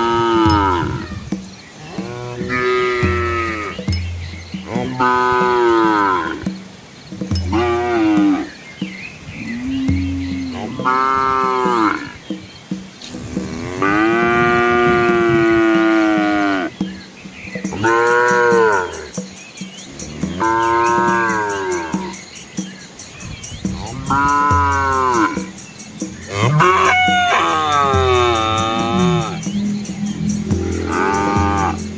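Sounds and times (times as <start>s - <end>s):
cattle mooing: 0.0s - 1.2s, 1.8s - 3.8s, 4.7s - 6.5s, 7.5s - 8.5s, 9.4s - 12.2s, 13.2s - 16.7s, 26.3s - 31.9s
faint fast high ticking: 0.3s - 31.9s.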